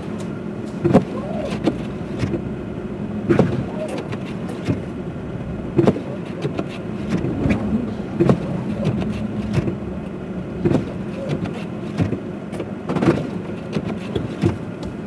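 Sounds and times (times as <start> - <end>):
car engine hum: 0.0 - 15.0
road noise: 0.0 - 15.0.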